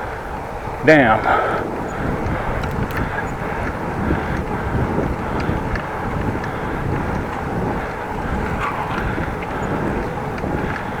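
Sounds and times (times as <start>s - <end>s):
wind noise on microphone: 0.0s - 11.0s.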